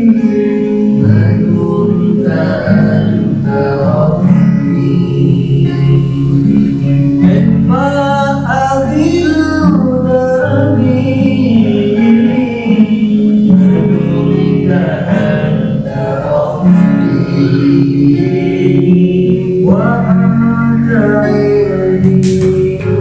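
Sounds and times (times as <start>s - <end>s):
person singing melismatic melody: 0.0s - 23.0s
sustained instrumental accompaniment: 0.0s - 23.0s.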